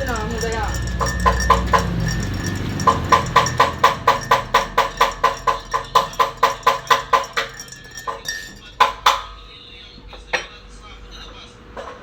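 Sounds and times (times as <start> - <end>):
spoon clinking against cup: 0.0 - 9.4.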